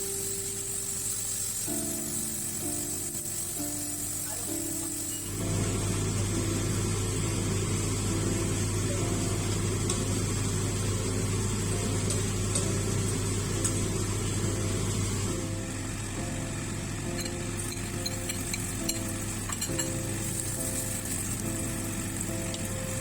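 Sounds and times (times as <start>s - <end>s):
appliance motor humming: 0.0s - 23.0s.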